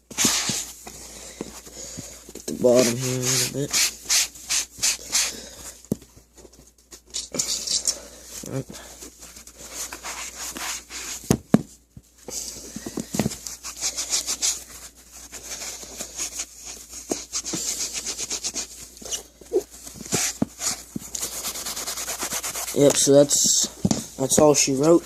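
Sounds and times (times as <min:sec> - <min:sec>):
foam scrubbing a shoe sole: 0:02.6 - 0:05.4, 0:20.1 - 0:23.5.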